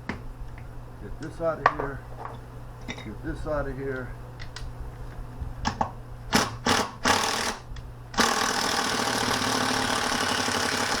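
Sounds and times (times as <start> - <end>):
power drill running: 6.3 - 11.0.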